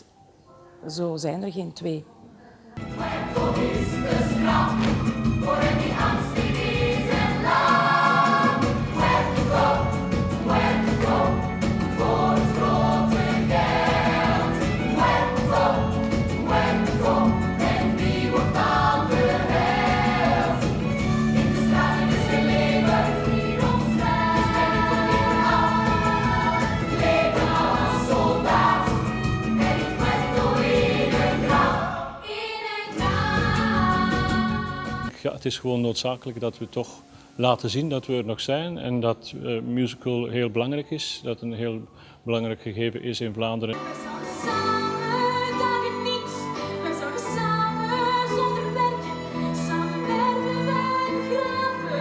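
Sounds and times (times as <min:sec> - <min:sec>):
group of voices singing: 0:02.8 - 0:35.1, 0:43.8 - 0:52.0
live band playing: 0:04.0 - 0:31.7.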